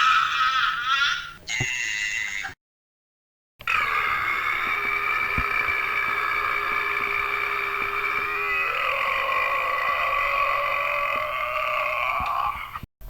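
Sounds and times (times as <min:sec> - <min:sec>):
long burp: 0:08.0 - 0:12.8.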